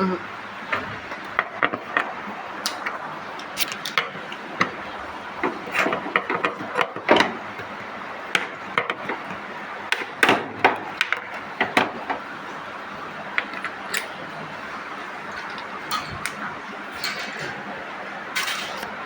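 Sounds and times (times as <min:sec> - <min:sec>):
metal panels being handled: 0:02.7 - 0:12.3, 0:15.2 - 0:17.7, 0:18.4 - 0:19.0.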